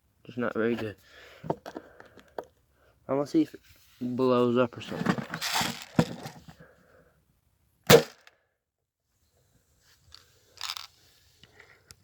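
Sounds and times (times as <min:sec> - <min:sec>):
short rustling: 0:04.8 - 0:06.4
bb gun shot: 0:07.9 - 0:08.2.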